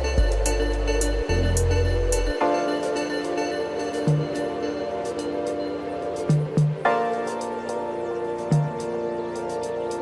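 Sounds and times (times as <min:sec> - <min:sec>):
background music chords: 0:00.0 - 0:10.0.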